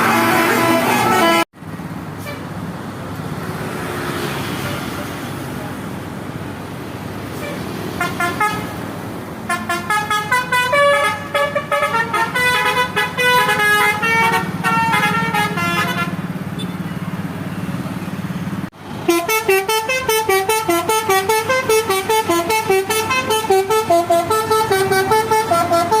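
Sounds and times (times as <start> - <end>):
musical air horn playing tune: 0.0 - 1.5, 19.0 - 26.0.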